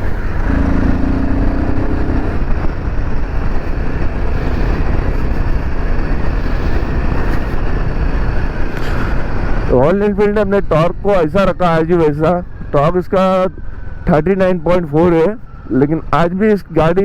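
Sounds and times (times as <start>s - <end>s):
motorcycle engine running: 0.0s - 8.6s
wind and road noise: 0.0s - 17.0s.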